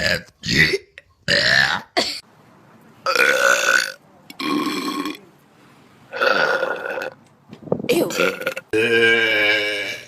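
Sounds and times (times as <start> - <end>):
girl burping loudly: 3.1 - 5.2, 7.9 - 10.0.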